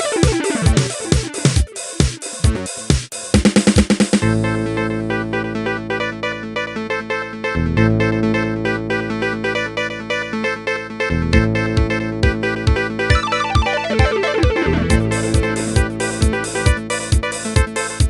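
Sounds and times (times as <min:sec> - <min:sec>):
synthesized phone ringtone: 0:13.1 - 0:15.9.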